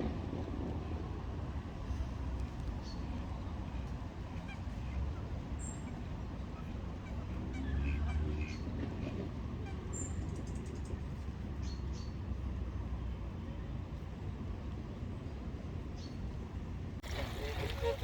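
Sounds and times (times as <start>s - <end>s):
ducks quacking: 17.0s - 18.0s.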